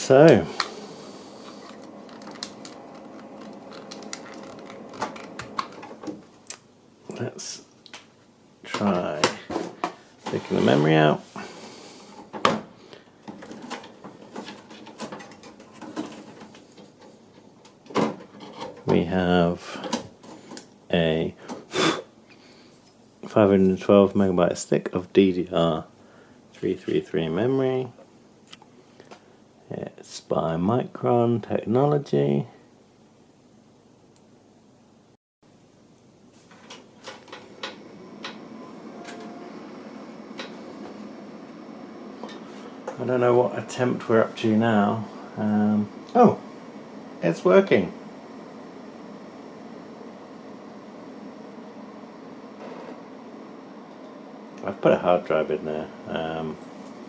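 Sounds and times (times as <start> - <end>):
computer fans whirring: 0.0 - 32.7, 35.5 - 57.0.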